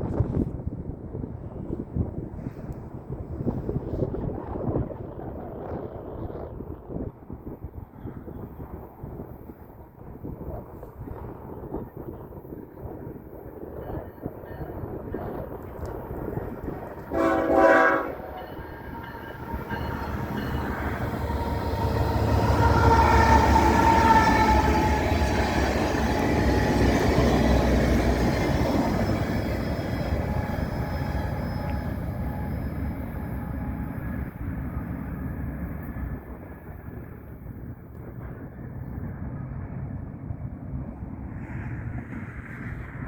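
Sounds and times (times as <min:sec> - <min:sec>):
train rumbling past: 0:00.0 - 0:43.0
locomotive horn blast: 0:17.0 - 0:19.6.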